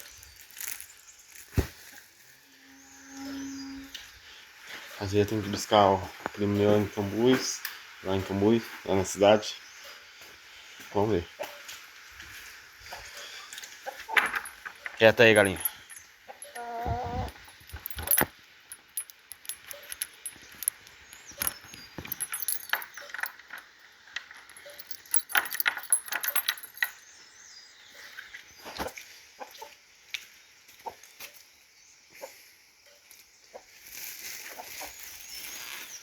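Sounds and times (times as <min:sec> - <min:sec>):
gear clattering and knocking: 0:14.1 - 0:27.0.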